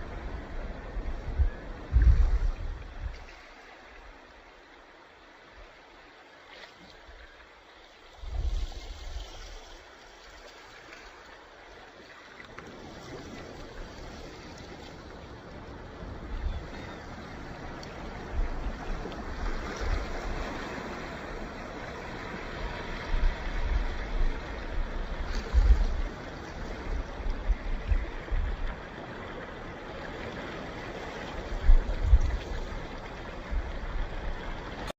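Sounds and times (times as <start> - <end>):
ocean surf washing ashore: 11.5 - 34.9.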